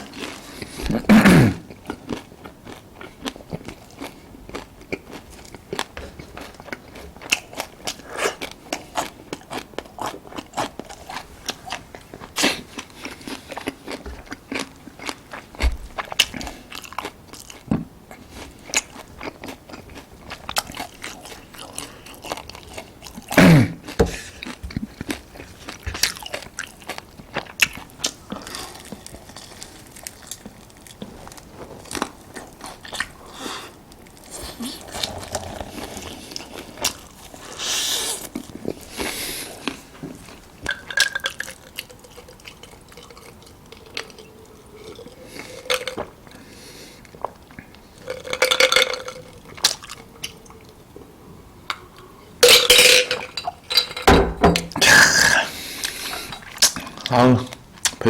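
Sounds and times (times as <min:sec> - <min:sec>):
biting and chewing crunches: 0:00.0 - 0:37.6.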